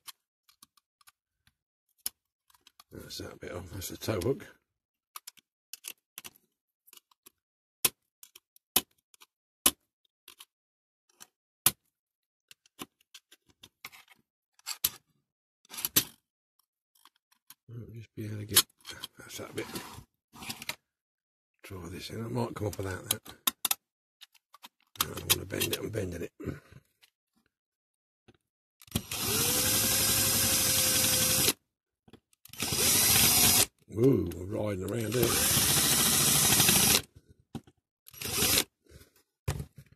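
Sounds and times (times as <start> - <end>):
electric drill running: 28.9 - 31.6, 32.6 - 33.7, 35.1 - 37.0, 38.2 - 38.7.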